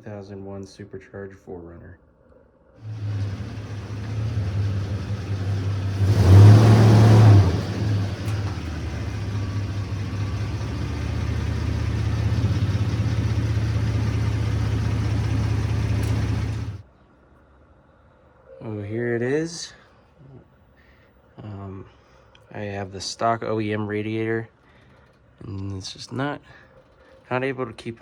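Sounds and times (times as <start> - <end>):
car engine running: 2.8 - 16.8
engine revving: 2.8 - 16.8.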